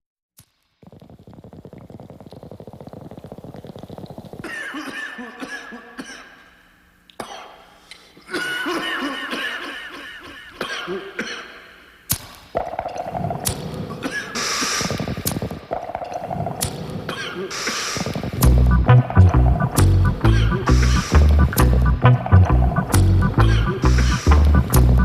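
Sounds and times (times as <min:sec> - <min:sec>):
bubbles gurgling: 0:00.8 - 0:04.5
diver breathing through regulator: 0:20.3 - 0:21.6, 0:23.4 - 0:24.6.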